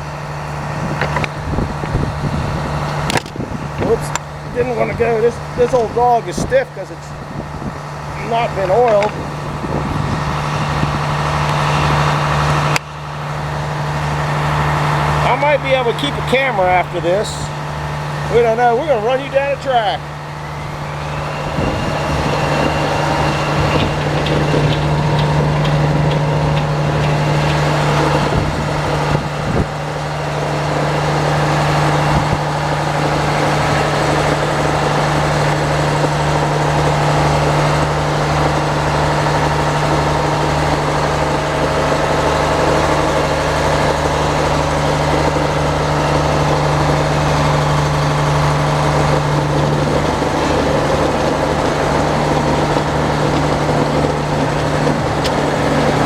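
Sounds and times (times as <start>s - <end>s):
log carriage running on track: 0.0s - 56.0s
sawmill engine running: 0.0s - 56.0s
sharp knocks and clanks: 0.9s - 2.2s, 2.9s - 4.3s, 8.7s - 9.3s, 21.7s - 29.3s.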